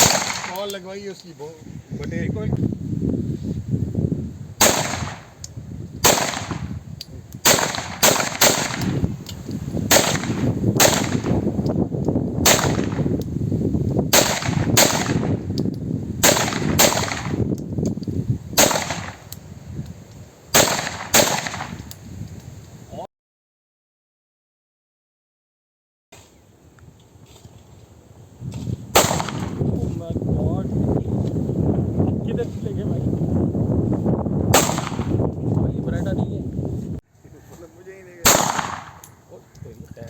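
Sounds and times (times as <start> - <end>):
handgun shots: 0.0 - 0.8, 4.6 - 5.2, 6.0 - 6.7, 7.4 - 9.0, 9.9 - 11.4, 12.4 - 13.1, 16.2 - 17.4, 18.6 - 19.2, 20.6 - 21.8, 29.0 - 29.6, 34.6 - 35.1, 38.2 - 39.2.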